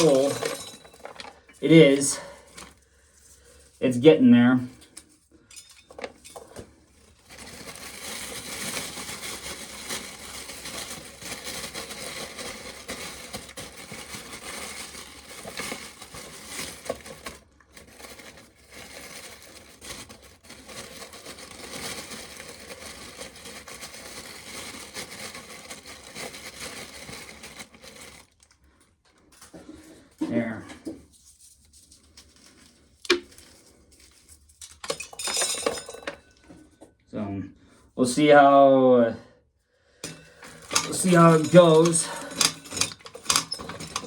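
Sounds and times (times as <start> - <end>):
corn sheller crunching rattle: 0.0 - 2.8, 5.5 - 28.6, 40.0 - 44.0.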